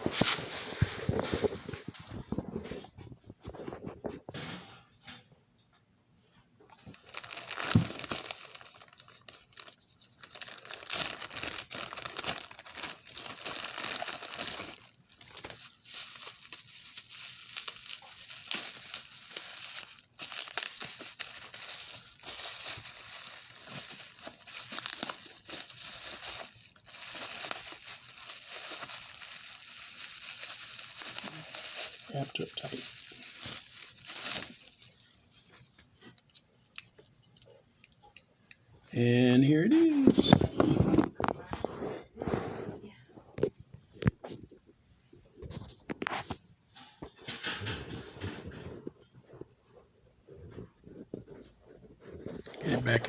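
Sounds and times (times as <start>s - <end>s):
plastic bag crinkling: 6.7s - 37.3s.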